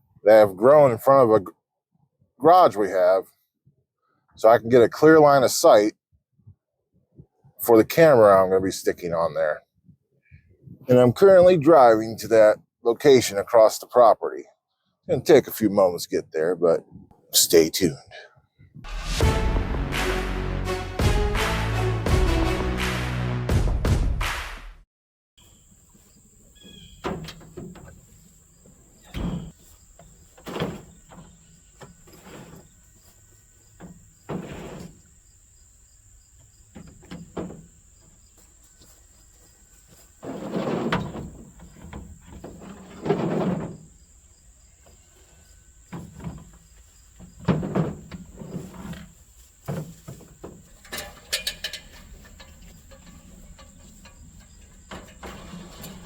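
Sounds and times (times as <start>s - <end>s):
vehicle rattling over rough ground: 45.9s - 56.0s.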